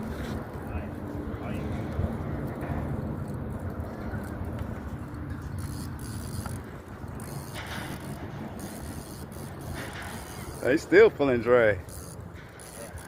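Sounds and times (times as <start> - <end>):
fishing reel drag clicking: 2.1 - 13.0.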